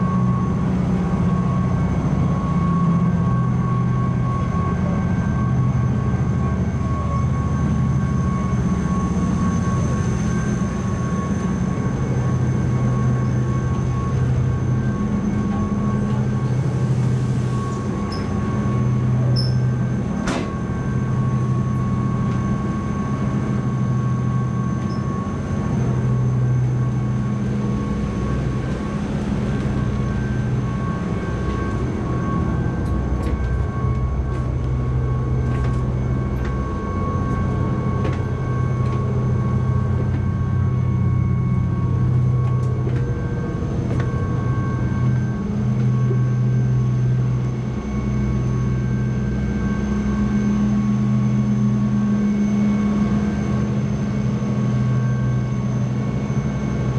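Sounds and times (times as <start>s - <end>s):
faint high whine: 0.0s - 56.9s
ship engines low drone: 0.0s - 56.9s.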